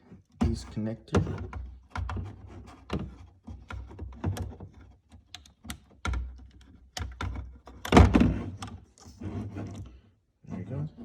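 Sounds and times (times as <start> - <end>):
plastic connector clicks and knocks: 5.2 - 8.7.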